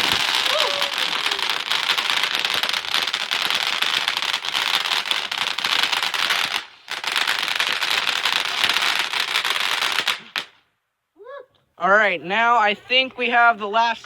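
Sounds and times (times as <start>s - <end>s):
firework crackling sparks: 0.0s - 10.7s.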